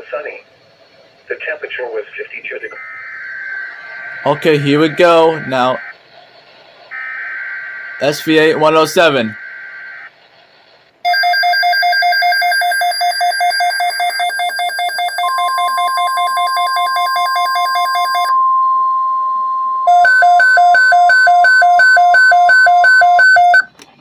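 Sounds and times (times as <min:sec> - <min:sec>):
louder beeping alarm: 0:02.8 - 0:05.9, 0:11.0 - 0:23.7
alert alarm beeping rapidly: 0:04.1 - 0:05.9, 0:11.1 - 0:19.0, 0:19.8 - 0:23.7
steady single-pitch attention tone: 0:13.9 - 0:23.7.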